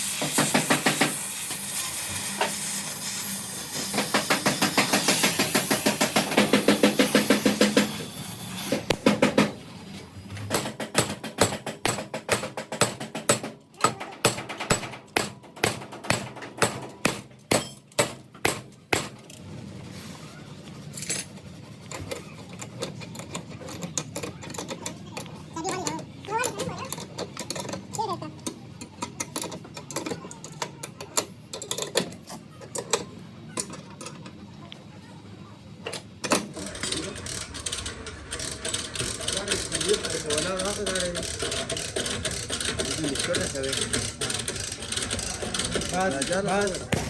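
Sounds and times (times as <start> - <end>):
hammer striking sheet metal: 10.5 - 19.2.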